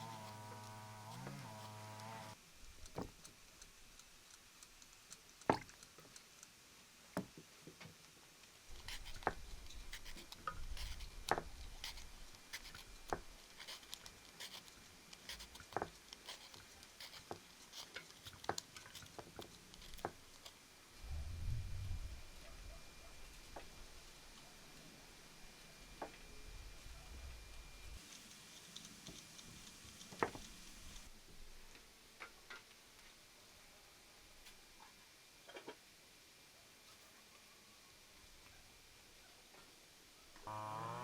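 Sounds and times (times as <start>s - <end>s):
faint low rumble: 21.0s - 24.1s.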